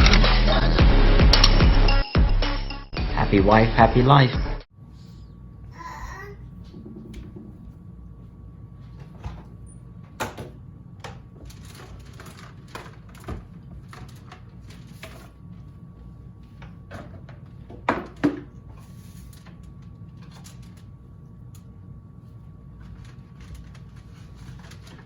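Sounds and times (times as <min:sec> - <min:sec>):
low room hum: 0:03.3 - 0:25.0.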